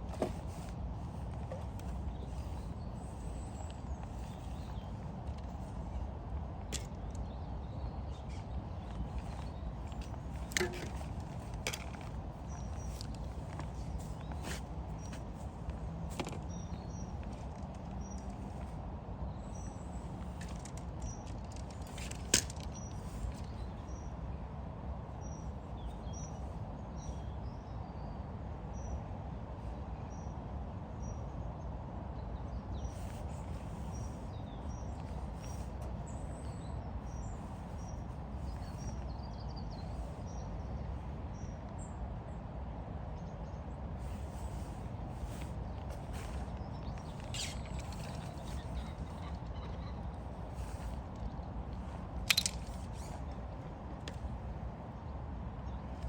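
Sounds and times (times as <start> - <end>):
low outdoor background noise: 0.0 - 56.0
small bird chirping: 44.0 - 54.2.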